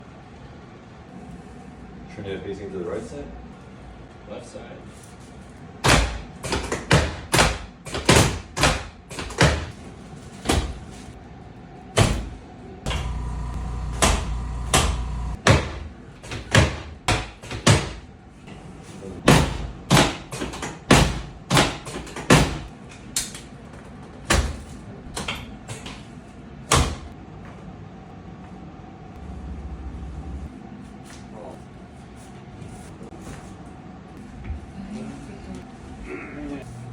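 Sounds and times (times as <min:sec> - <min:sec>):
low hum: 0:12.9 - 0:15.4.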